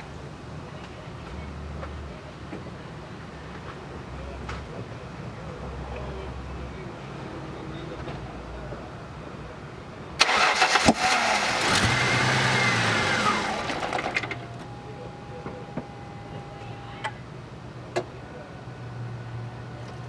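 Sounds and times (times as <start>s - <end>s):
car engine cranking and running: 10.2s - 16.0s.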